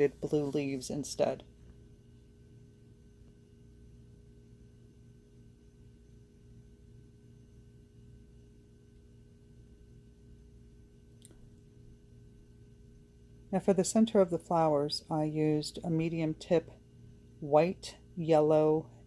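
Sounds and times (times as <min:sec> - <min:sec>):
faint electrical hum: 0:00.0 - 0:19.0
small click: 0:11.2 - 0:11.5.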